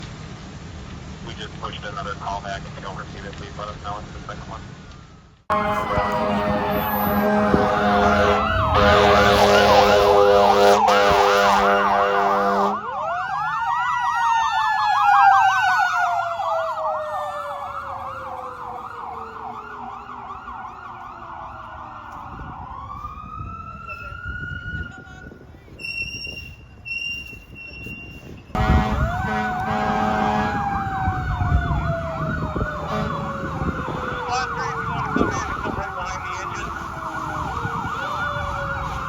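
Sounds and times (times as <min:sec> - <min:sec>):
air horn blast: 0:05.5 - 0:12.8, 0:28.6 - 0:31.2, 0:32.8 - 0:33.7
electronic yelp siren: 0:05.5 - 0:25.4, 0:28.6 - 0:39.0
wailing siren tone: 0:05.5 - 0:25.4, 0:28.6 - 0:39.0.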